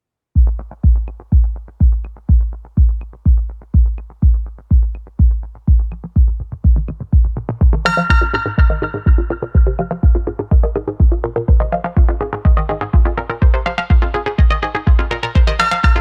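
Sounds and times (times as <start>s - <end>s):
electronic music: 0.4s - 16.0s
heavy kick drum: 0.4s - 16.0s
synth layer: 7.7s - 16.0s.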